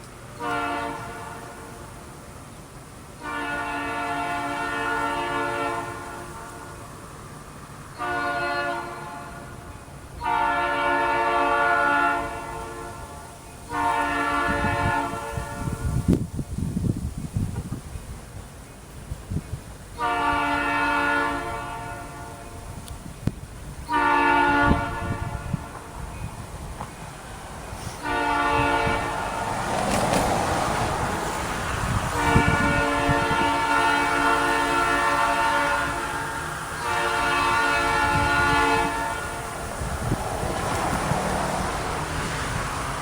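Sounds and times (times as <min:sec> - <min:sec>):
passing train rumble: 0:00.0 - 0:43.0
locomotive air horn blasts: 0:00.3 - 0:02.0, 0:03.2 - 0:07.0, 0:07.9 - 0:16.2, 0:19.9 - 0:22.9, 0:23.8 - 0:26.5, 0:27.7 - 0:30.2, 0:30.8 - 0:43.0.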